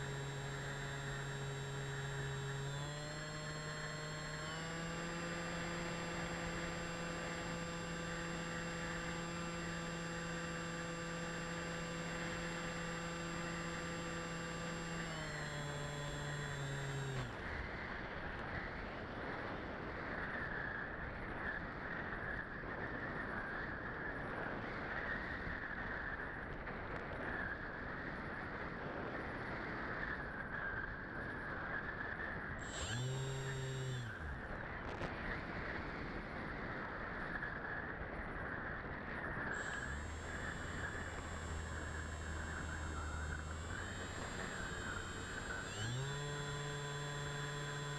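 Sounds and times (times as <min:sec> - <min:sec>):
model aircraft motor humming: 0:00.0 - 0:18.0, 0:32.6 - 0:35.1, 0:39.5 - 0:47.9.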